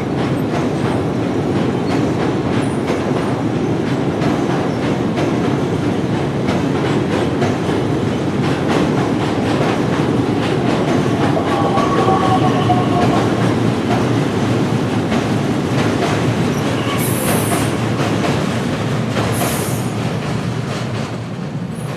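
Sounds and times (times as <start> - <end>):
train rumbling on rails: 0.0 - 21.9
faint squeal: 11.2 - 13.4.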